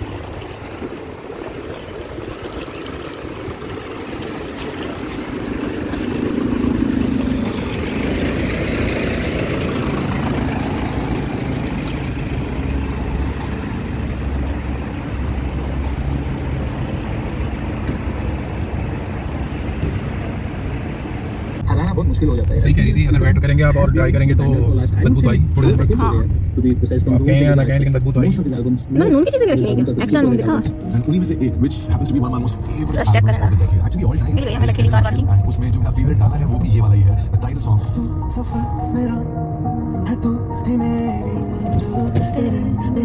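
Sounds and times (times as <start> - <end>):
car engine and road noise: 0.0 - 43.0.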